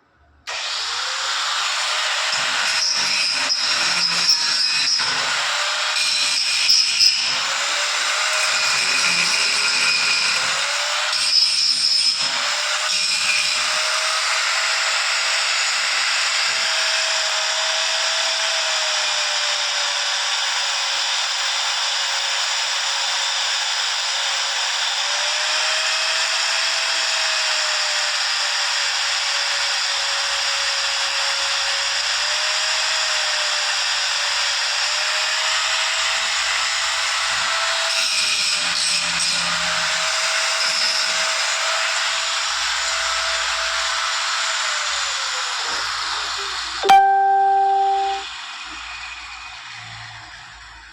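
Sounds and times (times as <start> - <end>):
faint wavering tone: 46.8 - 48.2.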